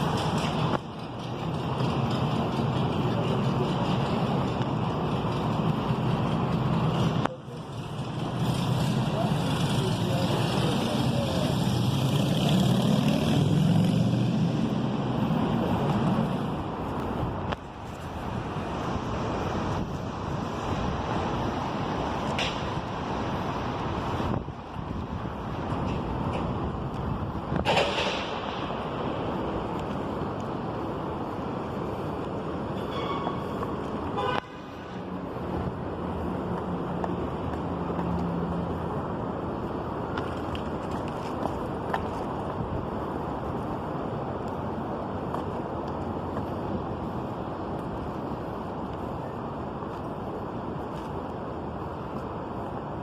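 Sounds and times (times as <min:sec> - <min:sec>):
traffic noise: 0:00.0 - 0:53.0
wind-like noise: 0:00.0 - 0:53.0
horn-like tone: 0:32.9 - 0:33.4.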